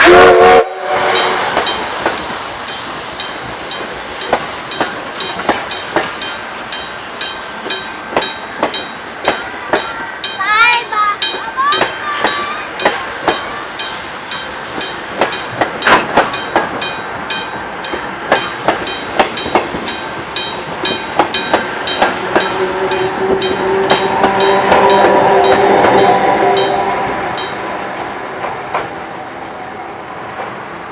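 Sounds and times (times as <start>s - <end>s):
train passing clickety-clack: 0.0s - 30.9s
level crossing bell ringing: 4.7s - 27.8s.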